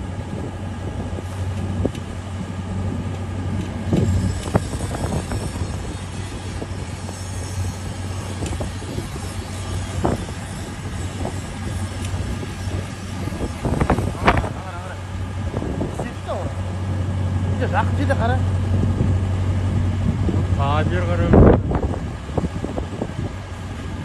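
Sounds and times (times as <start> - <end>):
low mechanical drone: 0.0 - 24.0.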